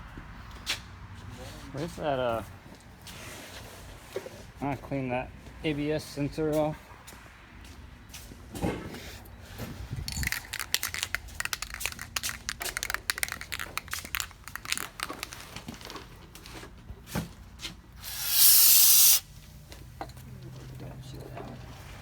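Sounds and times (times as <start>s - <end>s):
aerosol spray hissing: 18.0s - 19.3s.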